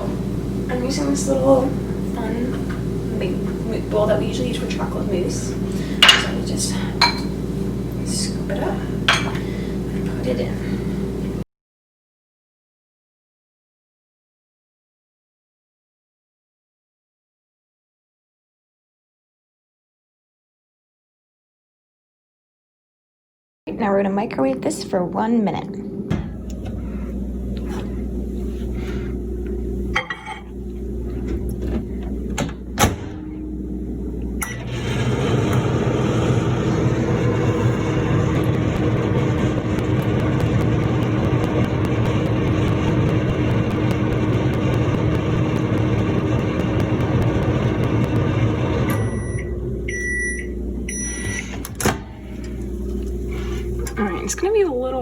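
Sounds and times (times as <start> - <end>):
microwave oven humming: 0.0 - 11.5, 23.7 - 55.0
microwave click: 31.4 - 33.3, 48.7 - 53.2
microwave short beeps: 48.9 - 51.6.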